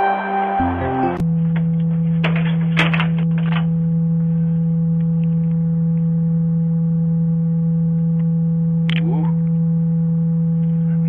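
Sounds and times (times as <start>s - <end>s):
low electrical hum: 0.0s - 11.0s
crackles and clicks: 7.9s - 9.6s.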